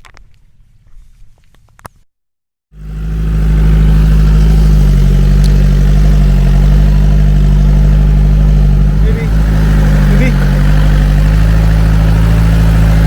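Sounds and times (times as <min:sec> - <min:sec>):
engine running loudly: 0:02.7 - 0:13.0.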